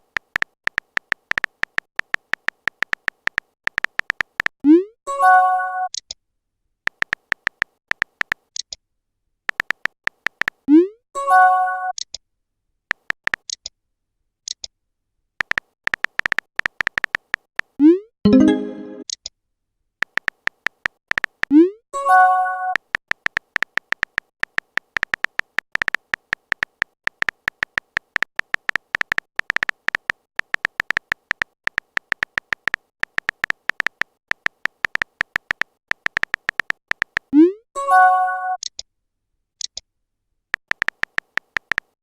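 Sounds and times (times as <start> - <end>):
typing clicks: 0.0 - 4.5, 6.9 - 8.8, 9.5 - 10.6, 12.9 - 13.7, 15.4 - 17.7, 20.0 - 21.6, 22.7 - 37.4, 39.6 - 39.8, 40.6 - 42.0
message swoop and chime: 18.3 - 19.0.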